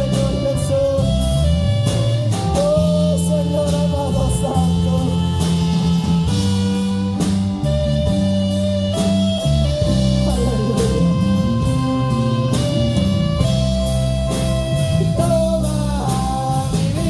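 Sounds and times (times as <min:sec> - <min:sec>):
drum kit: 0:00.0 - 0:17.0
held guitar chords: 0:00.0 - 0:17.0
person singing: 0:00.0 - 0:17.0
worship band playing: 0:00.0 - 0:17.0.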